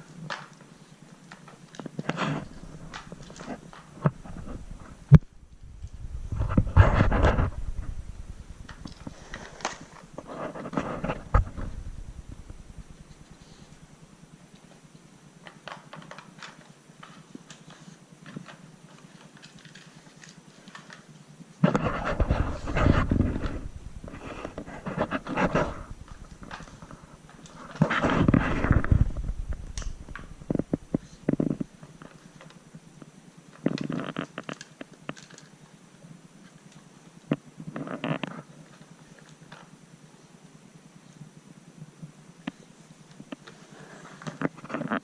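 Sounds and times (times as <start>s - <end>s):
plastic toy clicking and clattering: 33.6s - 35.6s.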